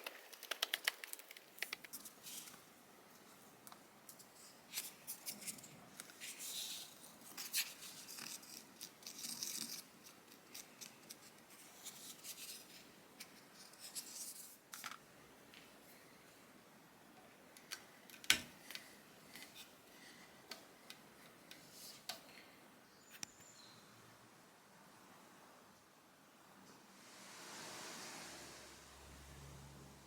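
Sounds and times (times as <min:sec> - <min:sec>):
small clicks: 0:00.0 - 0:02.5
quiet background hum: 0:00.0 - 0:30.0.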